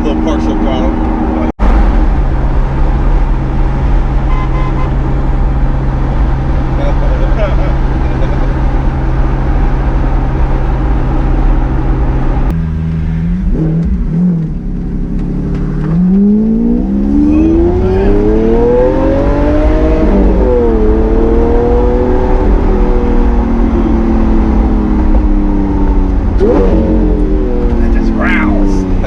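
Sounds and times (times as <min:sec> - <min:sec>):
car engine accelerating: 0:00.0 - 0:29.0.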